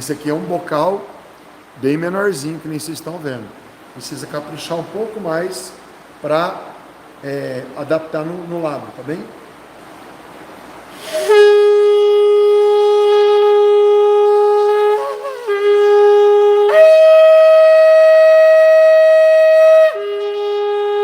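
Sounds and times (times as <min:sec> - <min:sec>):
shofar blown in long notes: 0:10.9 - 0:21.0.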